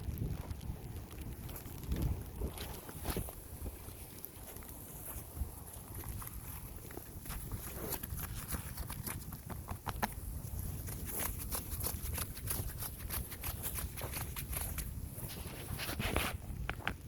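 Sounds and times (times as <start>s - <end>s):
wind buffeting microphone: 0.0s - 17.0s
footsteps crunching in snow: 0.2s - 17.0s.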